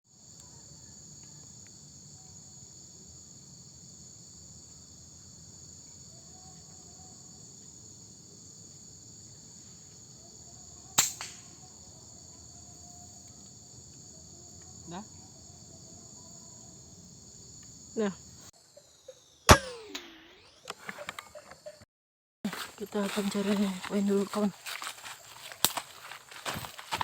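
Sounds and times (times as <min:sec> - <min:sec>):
crickets and insects chirping: 0:00.1 - 0:21.8, 0:22.5 - 0:27.0
air rifle shot: 0:19.5 - 0:20.4.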